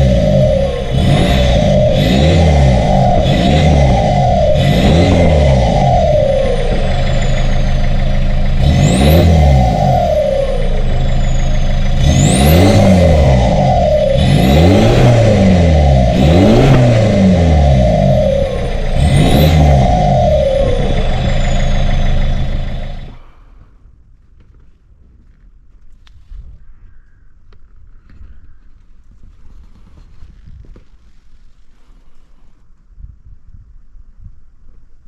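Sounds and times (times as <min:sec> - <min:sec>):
diesel engine revving: 0:00.0 - 0:23.7
turbo whistle: 0:18.3 - 0:23.2.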